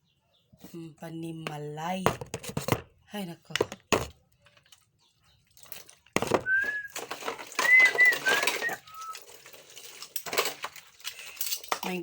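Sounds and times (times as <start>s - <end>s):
dishes clattering at sink: 6.2s - 12.0s.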